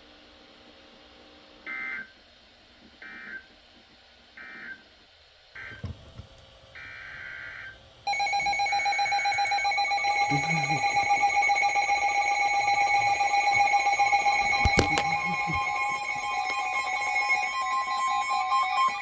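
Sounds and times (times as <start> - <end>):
loud steady alert attention tone: 8.1 - 16.2
digital data tone bursts: 8.1 - 17.6
faint radio hiss: 10.0 - 17.4.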